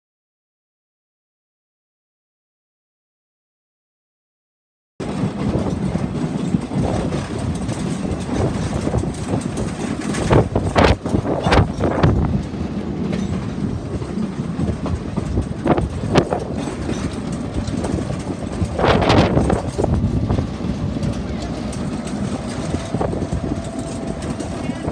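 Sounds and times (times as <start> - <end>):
train rumbling on rails: 5.0 - 24.9
train wheels clacking: 5.0 - 24.9.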